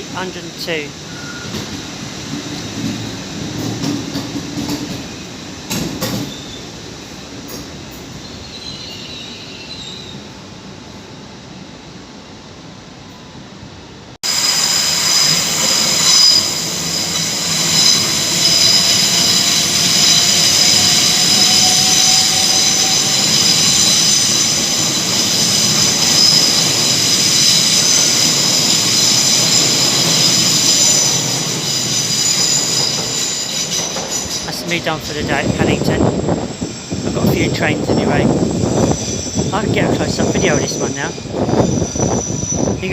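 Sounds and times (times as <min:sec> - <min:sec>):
high-pitched train squeal: 0:00.0 - 0:01.9, 0:03.6 - 0:06.8, 0:08.1 - 0:10.4, 0:14.3 - 0:42.9
train running noise: 0:00.0 - 0:42.9.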